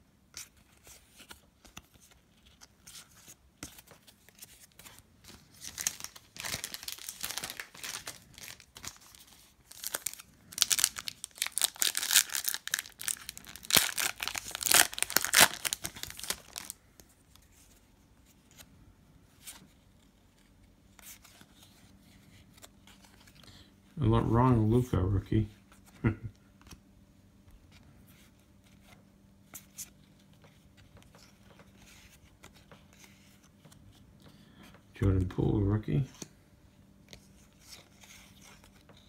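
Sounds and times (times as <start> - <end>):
cards rustling and clicking: 0.4 - 17.8
wrapper tearing and crinkling: 5.6 - 16.8.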